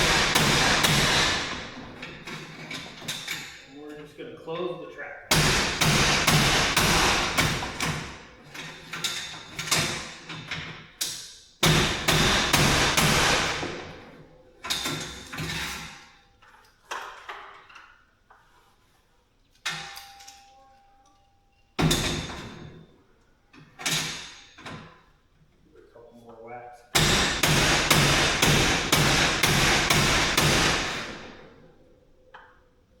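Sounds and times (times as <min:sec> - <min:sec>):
hammer striking metal track: 0:00.0 - 0:02.0.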